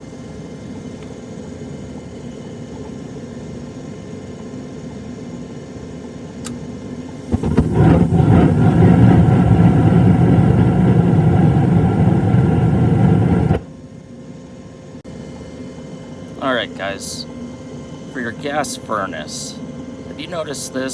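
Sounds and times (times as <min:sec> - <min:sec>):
gas furnace humming: 0:05.1 - 0:14.0, 0:16.0 - 0:20.9
furnace burners rushing: 0:07.2 - 0:13.7.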